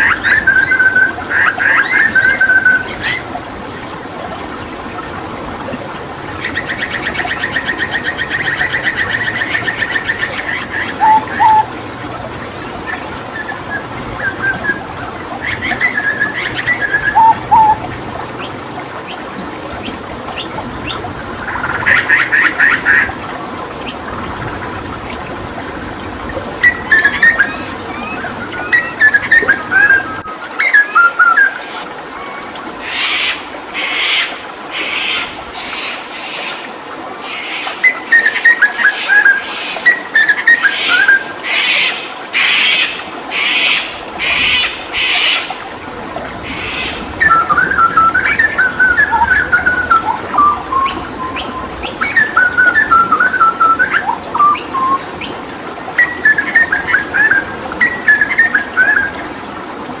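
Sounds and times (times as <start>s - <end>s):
running water: 0.0s - 60.0s
bird singing warbling notes: 6.4s - 11.7s, 12.9s - 19.2s, 26.6s - 31.6s, 46.6s - 55.4s, 56.0s - 59.2s.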